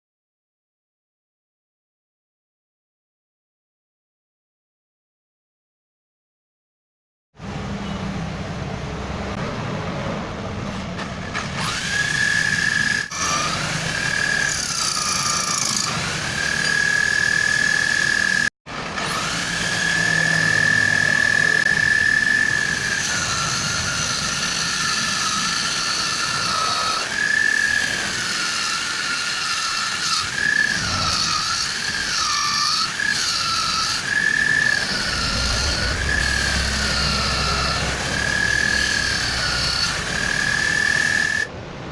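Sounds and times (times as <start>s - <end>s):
power tool cutting wood: 11.0s - 41.5s.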